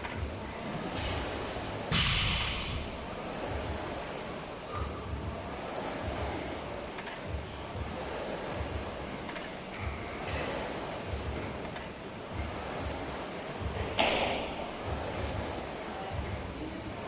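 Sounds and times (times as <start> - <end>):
noisy hall ambience: 0.0 - 17.0
low repeating thump: 0.2 - 4.0, 13.6 - 16.5
sharp loud bang: 0.9 - 3.8.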